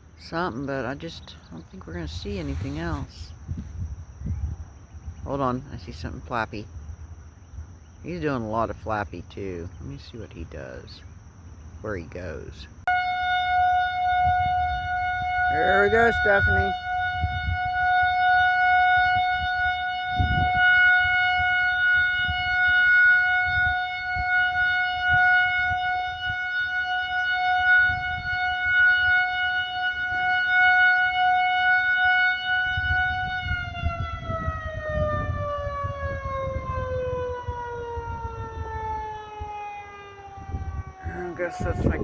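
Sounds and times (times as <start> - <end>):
warning siren winding down: 12.9 - 42.0.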